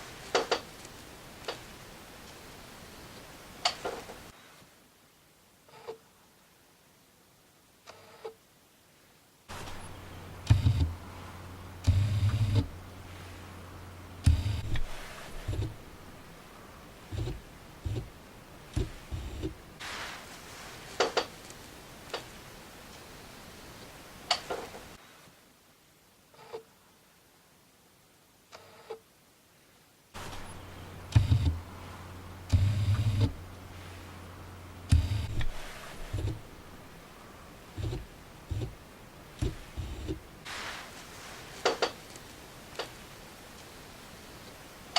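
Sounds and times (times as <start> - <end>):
lens focus motor whirr: 9.5 - 12.8, 14.2 - 16.2, 18.8 - 19.5, 30.2 - 33.7, 34.9 - 36.7, 39.4 - 40.2
sharp mechanical clicks: 9.5 - 12.9, 14.2 - 16.4, 17.1 - 19.6, 30.2 - 33.7, 34.9 - 36.9, 37.8 - 38.8, 39.4 - 40.2
brief hiss: 19.8 - 22.2, 40.4 - 42.9.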